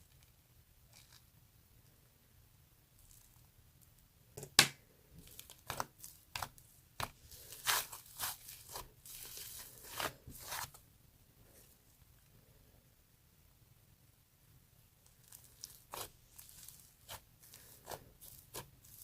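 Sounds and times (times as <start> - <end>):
sticky dough popping and crackling: 3.0 - 10.8, 15.0 - 19.0.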